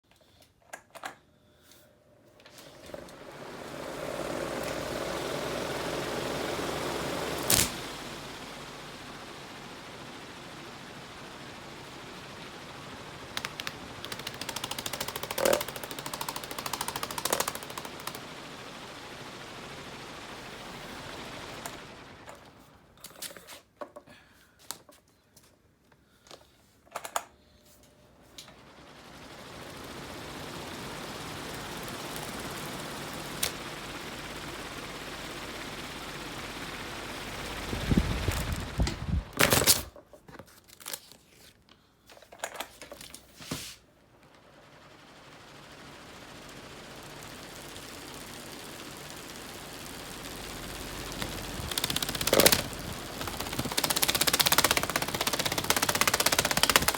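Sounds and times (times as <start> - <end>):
fan running with rapid ticking: 0.1 - 25.5, 26.1 - 56.9
scattered clicks and knocks: 13.3 - 18.2, 50.9 - 56.9.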